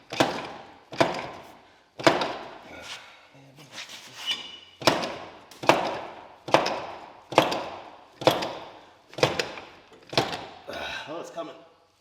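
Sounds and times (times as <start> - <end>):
hammer striking metal axle: 0.0 - 2.6, 4.4 - 10.7.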